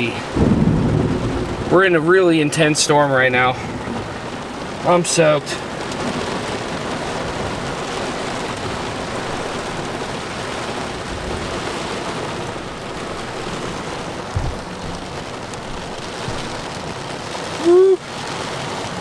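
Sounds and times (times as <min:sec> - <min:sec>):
heavy rain pouring: 0:00.0 - 0:19.0
low thump: 0:11.1 - 0:17.1.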